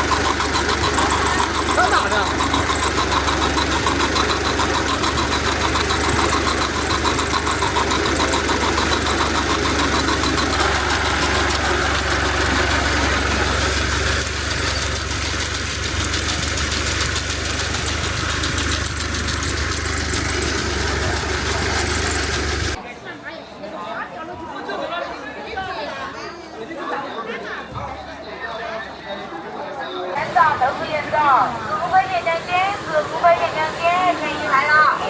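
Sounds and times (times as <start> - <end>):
engine idling: 0.0 - 22.8, 30.2 - 35.0.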